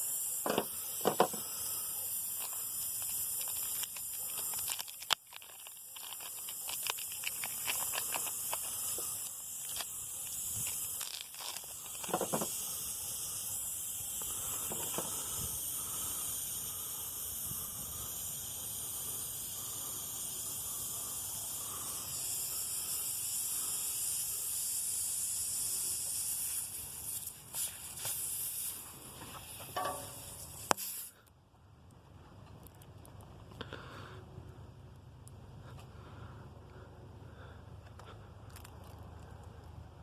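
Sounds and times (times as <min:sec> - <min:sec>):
air hissing out of tire: 0:00.0 - 0:31.2
tool knocks: 0:00.5 - 0:01.4.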